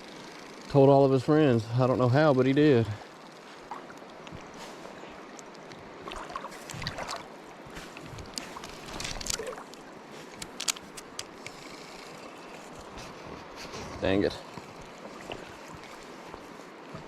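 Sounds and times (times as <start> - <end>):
water splashing: 3.5 - 4.2, 6.0 - 10.0, 14.4 - 16.5
river water rushing: 5.9 - 10.4
sharp clicks: 8.2 - 11.6.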